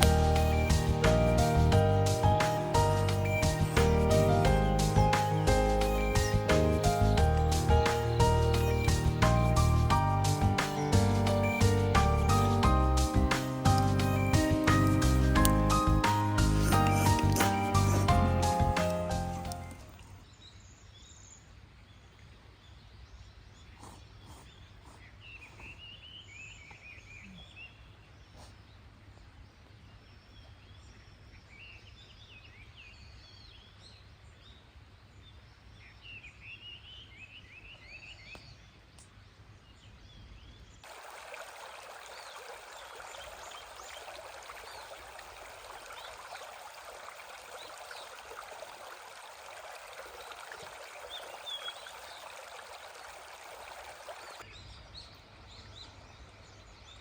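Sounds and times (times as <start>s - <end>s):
birds chirping: 0.0s - 20.2s, 42.0s - 57.0s
stream flowing: 0.0s - 20.2s, 40.8s - 54.5s.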